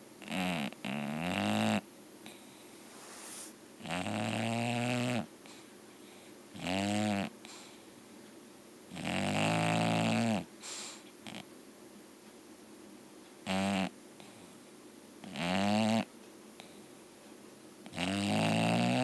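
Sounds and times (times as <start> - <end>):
dog snoring: 0.2 - 2.4, 3.2 - 5.6, 6.5 - 7.8, 8.9 - 11.5, 13.4 - 14.4, 15.2 - 16.1, 17.9 - 19.0
soft breaths: 2.2 - 3.6, 5.4 - 6.5, 7.4 - 8.3, 10.6 - 11.2, 14.1 - 14.8, 16.5 - 17.5.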